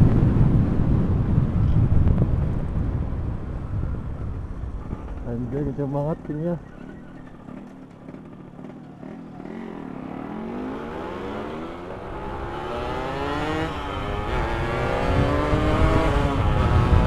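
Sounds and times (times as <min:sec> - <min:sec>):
two-stroke motorcycle accelerating: 0:03.9 - 0:17.0.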